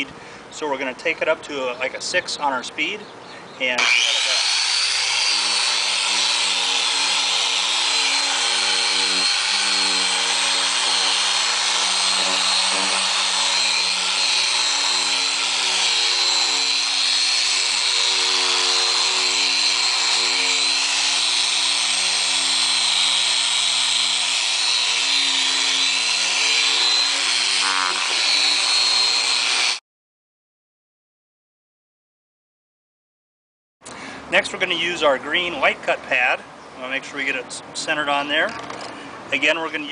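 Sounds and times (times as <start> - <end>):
polisher motor whine: 3.8 - 29.8.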